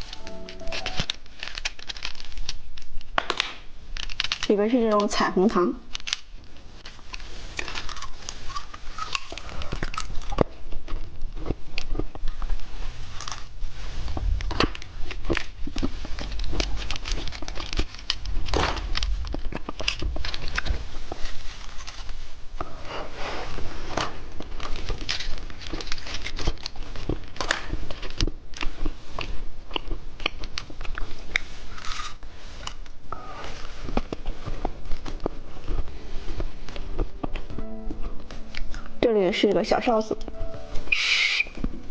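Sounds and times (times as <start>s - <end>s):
plastic packaging crinkling: 0.0s - 22.4s, 24.4s - 29.3s.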